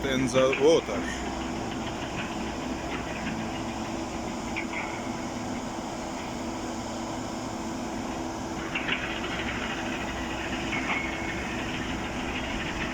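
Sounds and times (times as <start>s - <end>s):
machinery drone: 0.0s - 12.9s.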